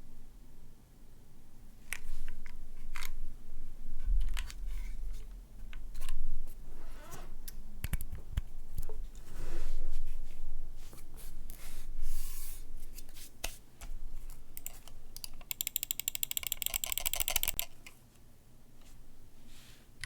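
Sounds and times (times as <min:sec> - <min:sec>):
mechanical keyboard key clacks: 0:14.6 - 0:17.8.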